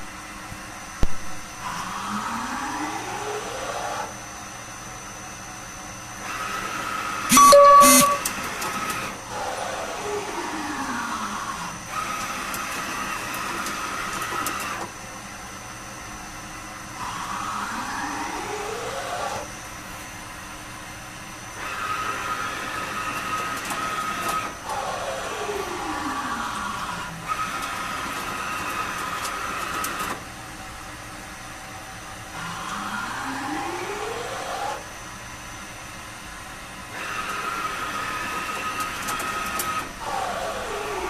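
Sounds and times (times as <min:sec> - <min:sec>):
machine running noise: 0:06.1 - 0:15.0, 0:36.5 - 0:41.0.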